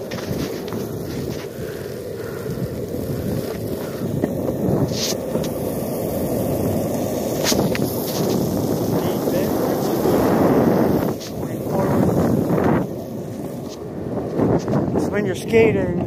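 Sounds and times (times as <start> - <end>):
skateboard clicks: 0.0 - 15.0
skateboard wheels rolling on pavement: 0.0 - 16.0.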